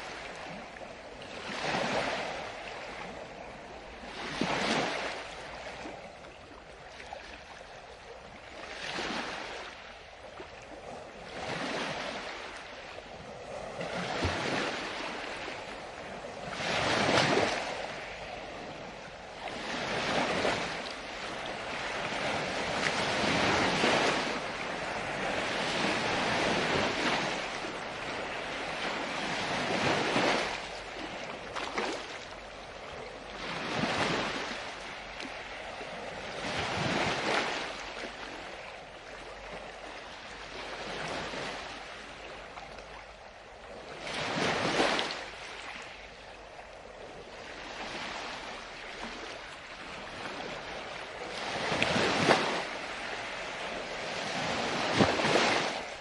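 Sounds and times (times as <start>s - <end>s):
waves breaking on a beach: 0.0s - 56.0s.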